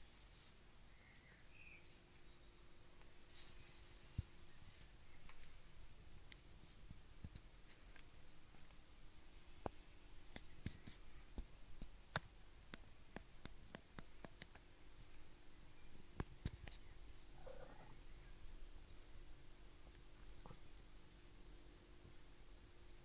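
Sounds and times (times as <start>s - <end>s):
soft breaths: 0.0s - 12.0s, 16.4s - 22.4s
small irregular clicks: 3.0s - 8.9s, 9.6s - 15.4s, 16.1s - 19.1s, 19.8s - 20.9s
cat snoring faintly: 17.4s - 18.1s.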